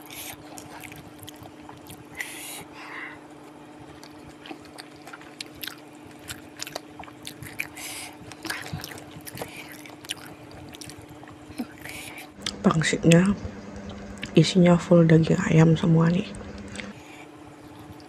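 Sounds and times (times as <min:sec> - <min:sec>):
biting and chewing: 0:00.0 - 0:02.4, 0:03.8 - 0:12.6.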